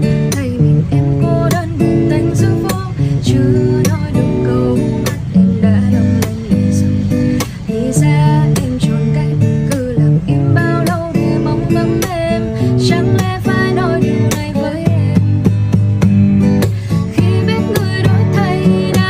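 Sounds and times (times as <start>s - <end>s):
acoustic guitar: 0.0s - 19.0s
steady beat: 13.1s - 19.0s
person singing: 16.9s - 19.0s.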